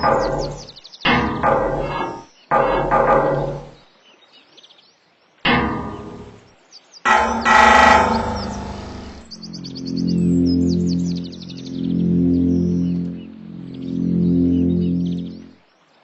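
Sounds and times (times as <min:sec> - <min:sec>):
ringing chords: 0:00.0 - 0:03.8, 0:05.5 - 0:06.4, 0:07.1 - 0:12.3.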